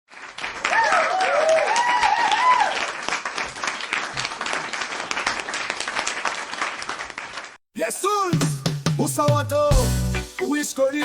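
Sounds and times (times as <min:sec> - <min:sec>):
crowd applauding: 0:00.1 - 0:07.6.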